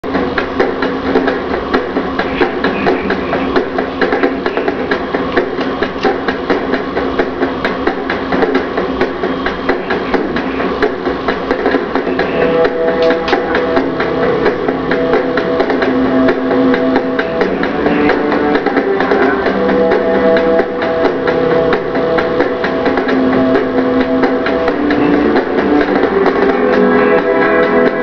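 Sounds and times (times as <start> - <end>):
fast drum beat: 0.0 - 28.0
distorted guitar: 11.8 - 28.0.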